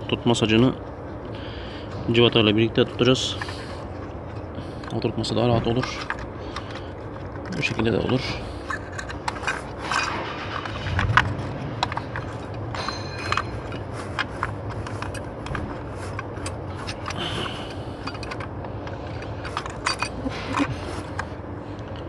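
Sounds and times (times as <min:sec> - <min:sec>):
metal tools clinking and scraping: 0:02.1 - 0:21.4
short metallic ring: 0:12.7 - 0:13.7.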